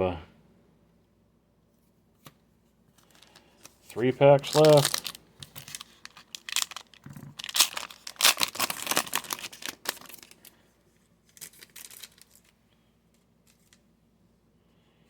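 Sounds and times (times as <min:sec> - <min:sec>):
foil wrapper crinkling: 0:03.0 - 0:10.6, 0:11.2 - 0:12.6.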